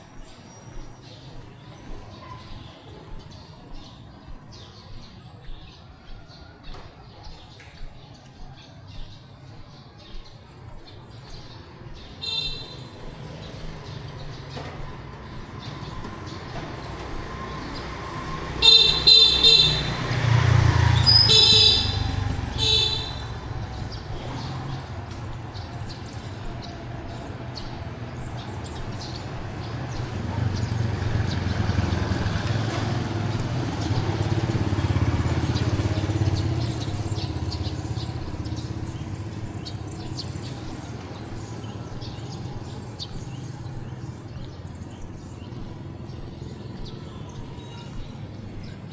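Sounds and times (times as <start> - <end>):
engines passing with low rumble: 0.0 - 48.9
vehicle horns tooting: 12.2 - 13.0, 18.5 - 24.8.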